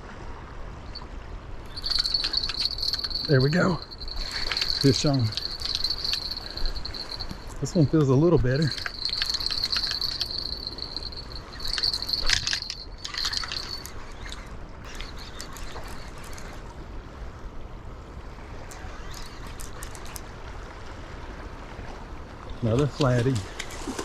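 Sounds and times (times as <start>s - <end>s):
water splashing and trickling: 0.0s - 16.9s, 18.7s - 24.0s
high insect trill: 1.7s - 16.5s, 18.8s - 20.2s.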